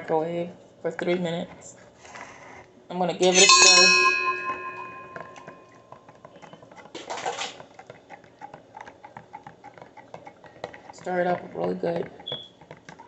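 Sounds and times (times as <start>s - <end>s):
spoon clinking in cup: 3.2s - 5.7s.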